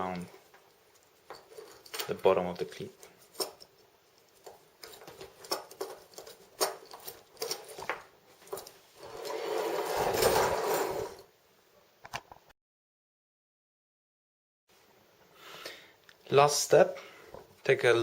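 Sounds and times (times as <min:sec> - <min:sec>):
rope rubbing: 0:04.3 - 0:11.2.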